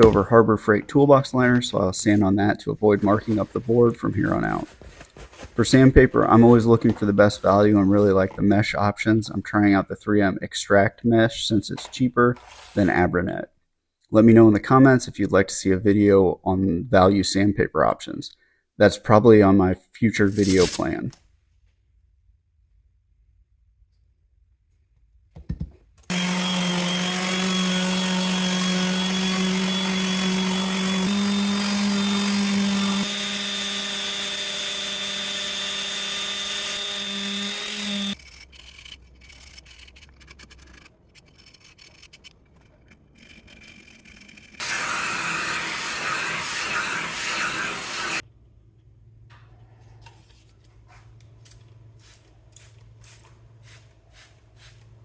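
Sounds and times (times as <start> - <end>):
orbital sander on wood: 26.1 - 38.2, 44.6 - 48.2.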